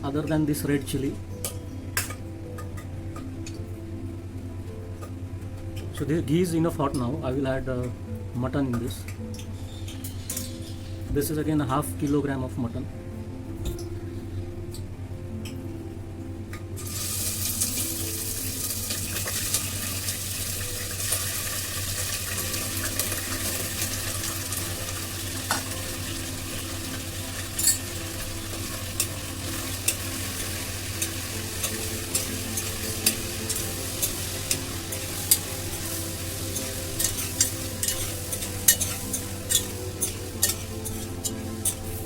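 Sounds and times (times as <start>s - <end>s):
meat sizzling in hot fat: 16.8s - 42.0s
spoon clinking against pan: 36.6s - 41.9s.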